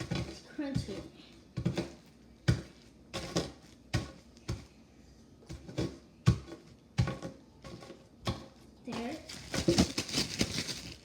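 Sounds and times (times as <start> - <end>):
cookies crunching: 7.8 - 11.0.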